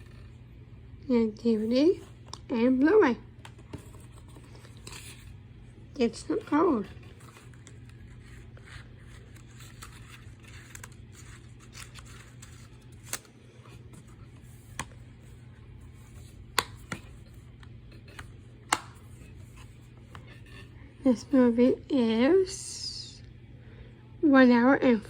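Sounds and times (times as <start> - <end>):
steady low hum: 0.0 - 25.0
plastic case clicks: 18.2 - 19.0.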